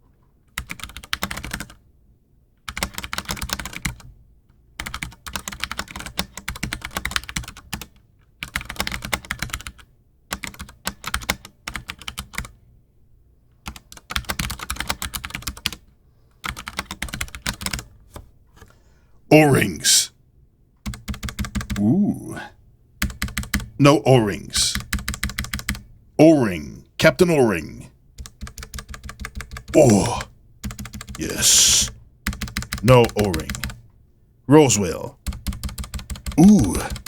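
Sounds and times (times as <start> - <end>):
typing on mechanical keyboard: 0.5 - 1.8, 2.7 - 4.1, 4.8 - 12.6, 13.7 - 15.8, 16.4 - 17.8, 20.9 - 21.8, 23.0 - 23.7, 24.7 - 25.8, 28.2 - 29.7, 30.6 - 31.2, 32.3 - 32.8, 35.2 - 37.0.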